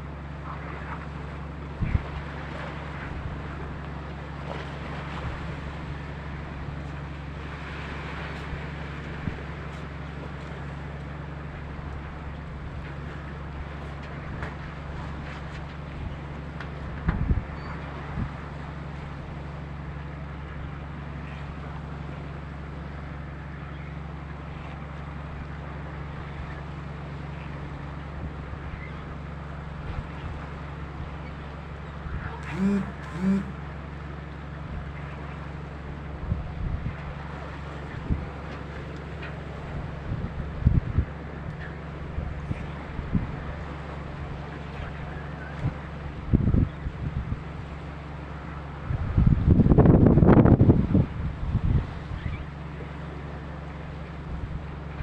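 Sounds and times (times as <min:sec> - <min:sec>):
wind and water rushing: 0:00.0 - 0:23.4, 0:24.8 - 0:55.0
boat engine droning: 0:00.0 - 0:55.0
wind thumps on microphone: 0:16.9 - 0:17.5.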